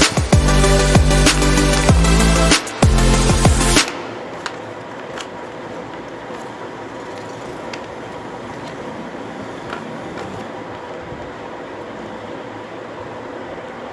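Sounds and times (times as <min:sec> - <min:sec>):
steady background noise: 0:00.0 - 0:13.9.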